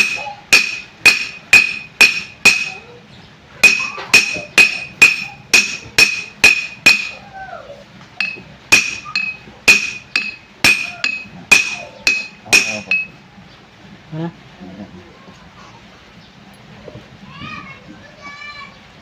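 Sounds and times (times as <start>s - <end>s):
hammer striking steel: 0.0s - 2.8s, 3.6s - 7.2s, 8.2s - 13.2s.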